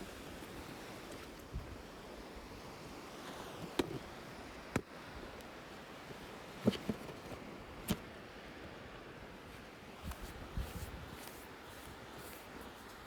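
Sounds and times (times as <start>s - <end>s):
steady background hiss: 0.0s - 13.0s.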